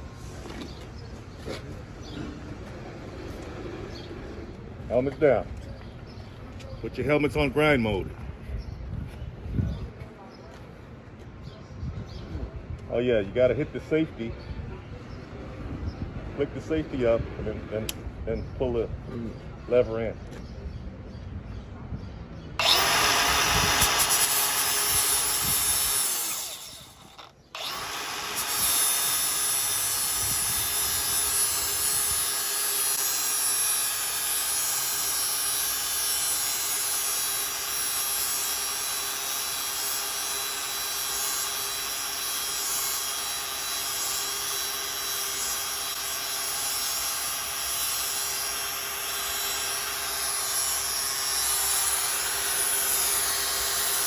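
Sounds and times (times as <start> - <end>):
angle grinder grinding metal: 22.6 - 54.0.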